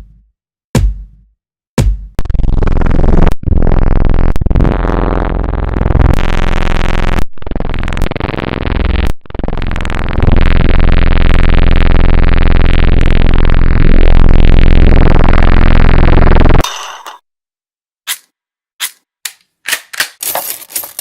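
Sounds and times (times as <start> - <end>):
distorted synthesizer noise: 2.2 - 16.6.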